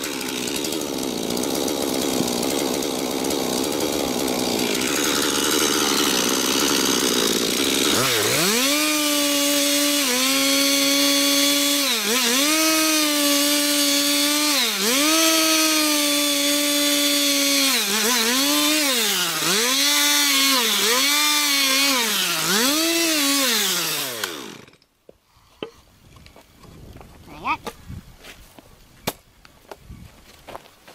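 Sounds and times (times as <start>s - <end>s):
chainsaw revving: 0.0s - 24.8s
chainsaw cutting wood: 0.0s - 24.9s.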